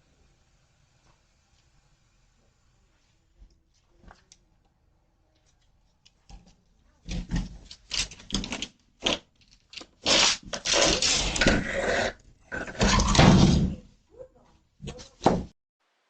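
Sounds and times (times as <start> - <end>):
door rattling and scraping: 10.7 - 13.8.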